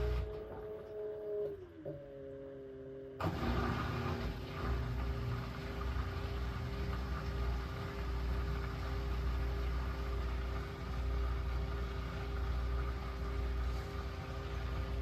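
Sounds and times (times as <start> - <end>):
washing machine motor hum: 0.0 - 15.0
water rush and low rumble: 4.3 - 15.0.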